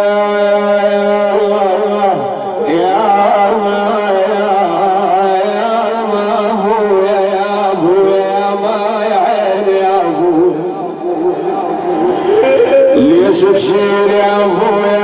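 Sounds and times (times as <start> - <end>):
man chanting a lament: 0.0 - 15.0
steady low drone: 10.4 - 14.7.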